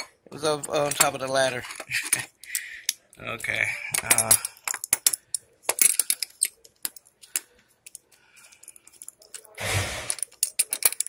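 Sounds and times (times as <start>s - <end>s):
small metal parts clinking: 0.0s - 11.0s
loud scraping rustle: 9.6s - 10.2s.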